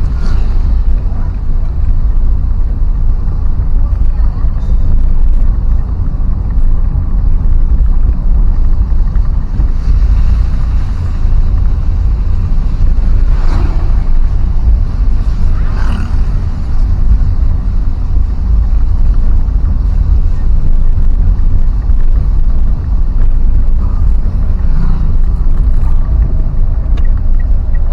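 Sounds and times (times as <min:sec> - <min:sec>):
low road rumble: 0:00.0 - 0:27.9
vehicles passing close by: 0:00.0 - 0:27.9
wind buffeting: 0:00.0 - 0:27.9.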